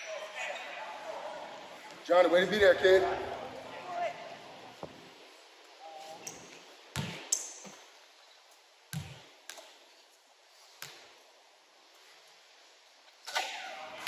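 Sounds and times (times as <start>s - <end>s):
basketball bouncing on gym floor: 6.9s - 7.4s, 8.9s - 9.7s.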